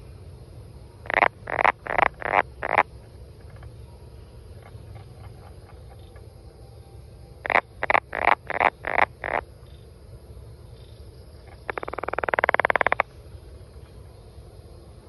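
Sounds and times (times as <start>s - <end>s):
frog croaking: 0.8s - 6.4s, 7.3s - 9.8s, 11.3s - 14.2s
frog rattling trill: 1.0s - 2.9s, 7.4s - 9.4s, 11.5s - 13.1s.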